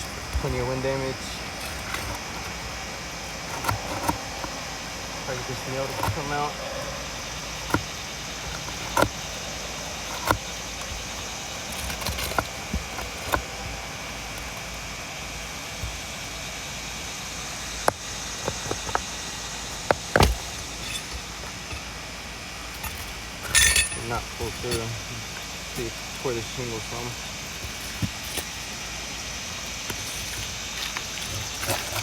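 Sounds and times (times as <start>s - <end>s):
tool prying roofing nail: 0.0s - 4.6s, 5.6s - 6.5s, 7.1s - 14.8s, 19.8s - 21.9s
steady background noise: 0.0s - 32.0s.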